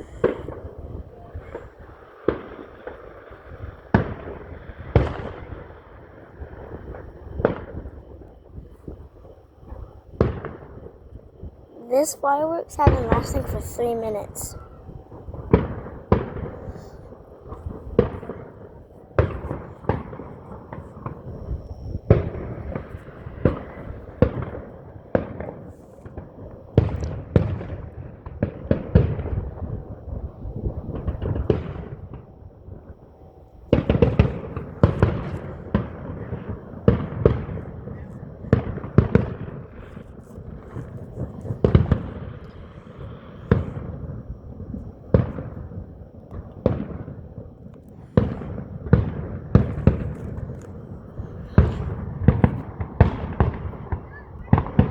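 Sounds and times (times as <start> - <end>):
fireworks exploding: 11.8 - 14.6, 15.4 - 21.2, 33.7 - 54.9.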